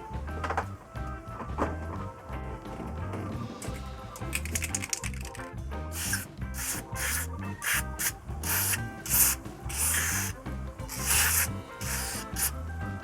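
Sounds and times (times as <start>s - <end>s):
background music with bass line: 0.0s - 13.0s
hissing scraping strokes: 6.0s - 13.0s.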